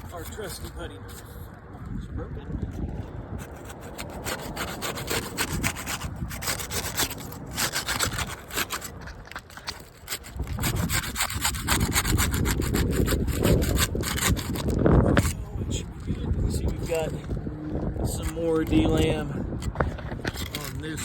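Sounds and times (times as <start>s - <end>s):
putty knife scraping shingles: 3.4s - 15.5s, 18.1s - 21.0s.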